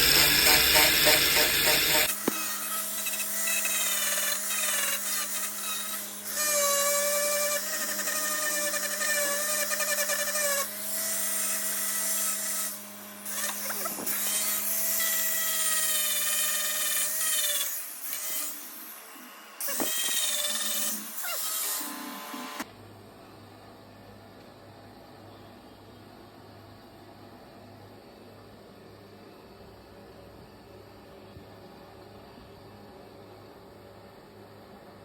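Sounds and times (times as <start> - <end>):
small power tool whining: 0.0 - 22.7.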